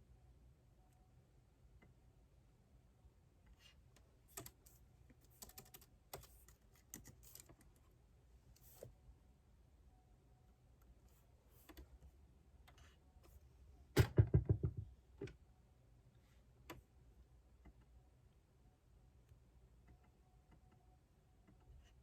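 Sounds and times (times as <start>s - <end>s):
computer keyboard typing: 4.3s - 7.8s
desk thud: 14.0s - 14.9s.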